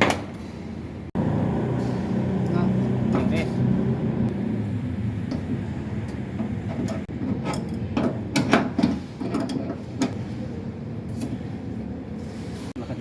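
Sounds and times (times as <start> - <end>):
low hum: 1.1 - 7.8
sharp clicks and knocks: 5.2 - 10.2.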